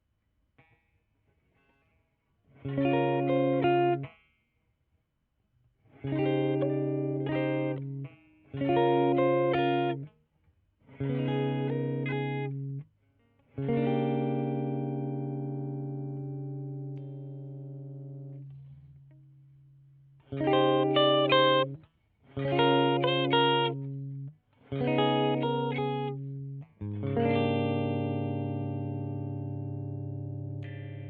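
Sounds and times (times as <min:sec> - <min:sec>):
electric guitar strumming chords: 0:02.7 - 0:04.2, 0:06.0 - 0:10.1, 0:11.0 - 0:12.8, 0:13.5 - 0:19.2, 0:20.2 - 0:21.8, 0:22.4 - 0:31.0.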